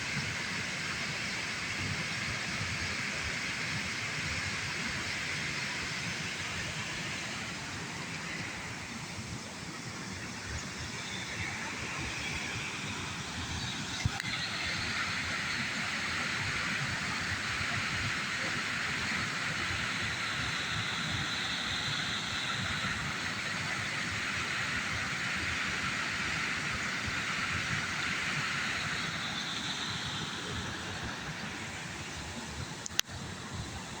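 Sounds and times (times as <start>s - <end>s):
waterfall roar: 0.0s - 34.0s.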